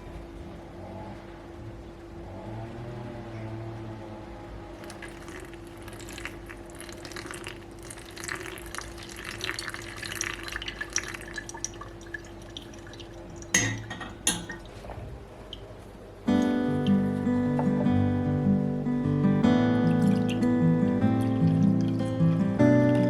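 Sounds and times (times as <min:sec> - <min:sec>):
steady hum: 0:00.0 - 0:23.0
water dripping and trickling: 0:04.8 - 0:15.8, 0:19.6 - 0:23.0.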